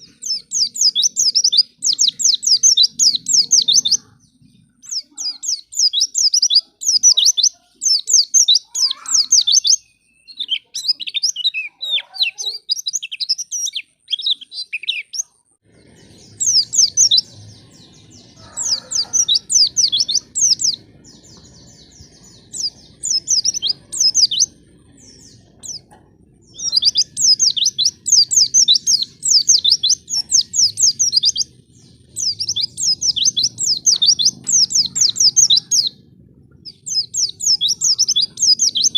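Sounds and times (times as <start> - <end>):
bird chirping trills: 0.0 - 38.9
low steady hum: 15.5 - 38.9.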